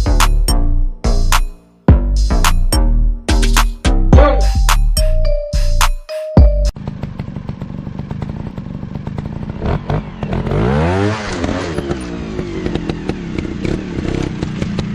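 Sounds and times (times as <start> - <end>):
dirt bike engine running: 6.8 - 14.9.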